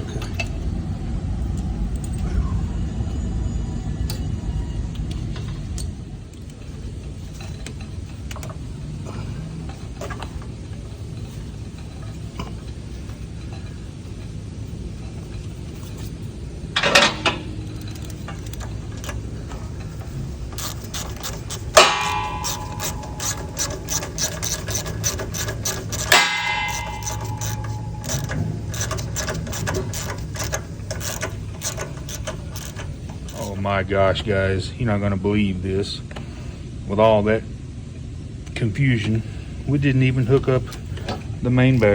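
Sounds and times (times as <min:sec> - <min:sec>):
tools clanging on metal: 0:00.0 - 0:00.6, 0:05.3 - 0:33.7
steady low hum: 0:00.0 - 0:41.9
ratchet wrench clicking: 0:05.8 - 0:33.7.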